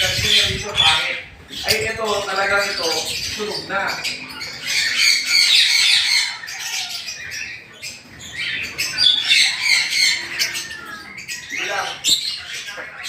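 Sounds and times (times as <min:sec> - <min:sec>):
parrots squawking: 0:00.0 - 0:13.0.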